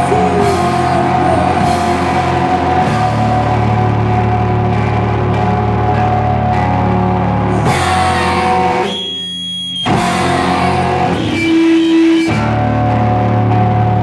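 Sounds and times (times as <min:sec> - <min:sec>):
heavy low end: 0:00.0 - 0:08.9
electric guitar chords: 0:00.0 - 0:14.0.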